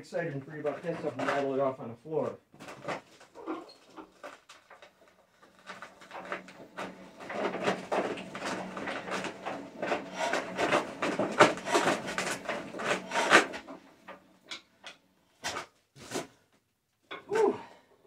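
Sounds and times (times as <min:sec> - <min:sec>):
diesel engine turned by hand: 0:05.5 - 0:14.9.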